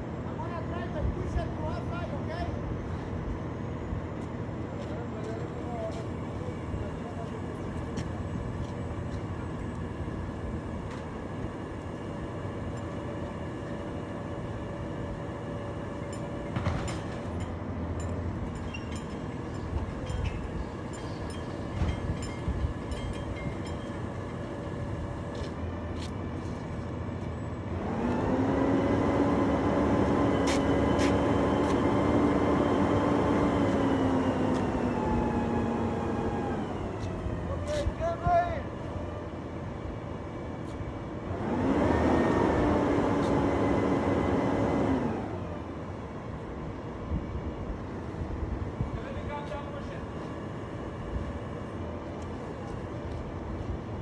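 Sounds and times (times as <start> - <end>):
engine revving: 27.7 - 36.8, 41.3 - 45.4.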